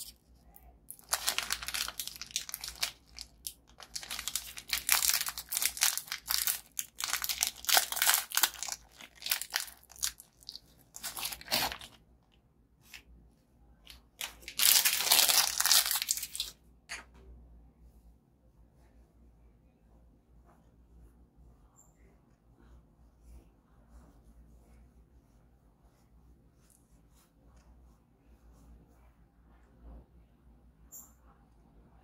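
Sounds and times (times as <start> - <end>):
plastic wrapper crinkling and tearing: 0.9 - 12.0, 13.9 - 16.6.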